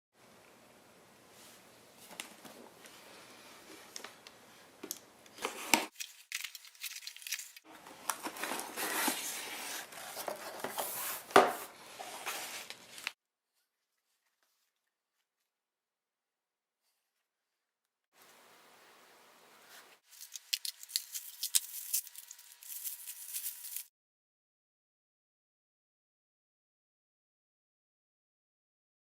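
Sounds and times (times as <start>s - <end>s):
packaging tearing and crinkling: 5.9s - 10.5s, 20.0s - 23.9s.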